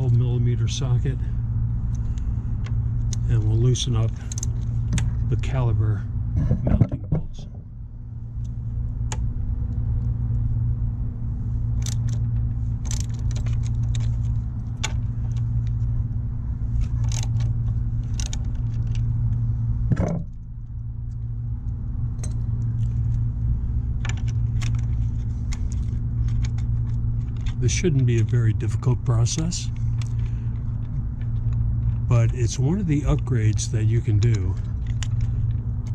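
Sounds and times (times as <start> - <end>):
steady low hum: 0.0 - 35.9.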